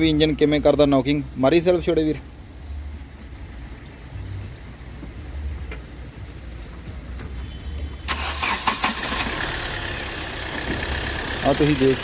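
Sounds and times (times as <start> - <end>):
car engine starting and running: 0.0 - 12.0.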